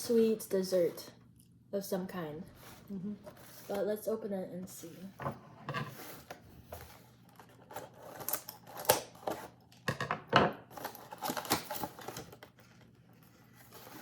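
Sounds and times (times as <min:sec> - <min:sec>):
snack packaging being opened: 0:07.3 - 0:09.8, 0:10.7 - 0:14.0.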